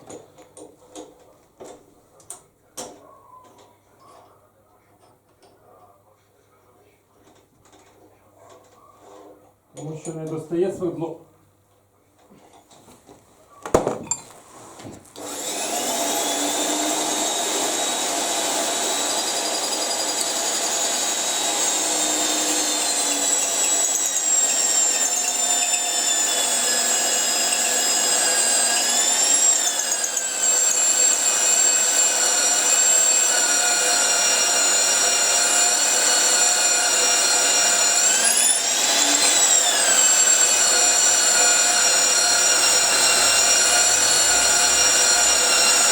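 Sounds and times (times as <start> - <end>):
drill motor whining: 15.2 - 45.9.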